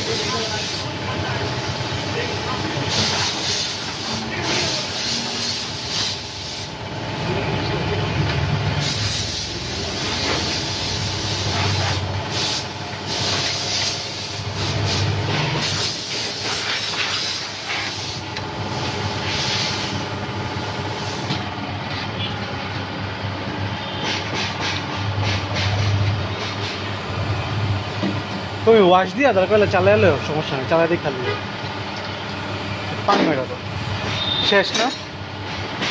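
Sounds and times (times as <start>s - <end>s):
loud hissing bursts: 0.0s - 2.2s, 2.8s - 7.0s, 8.7s - 21.4s.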